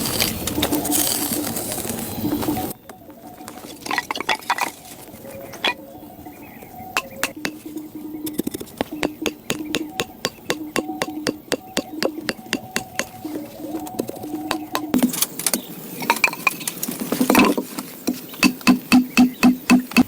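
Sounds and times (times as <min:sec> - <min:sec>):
hard object clinking taps: 0:07.0 - 0:15.1, 0:18.1 - 0:20.0.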